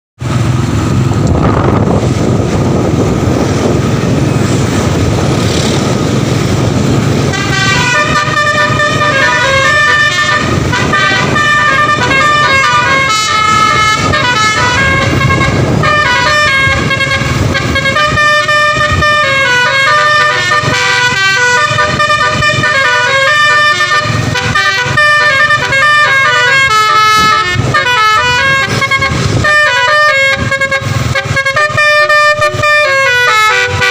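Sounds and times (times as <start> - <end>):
bus engine rumbling: 0.2 - 33.9
multi-tone bus air horn: 7.2 - 33.9.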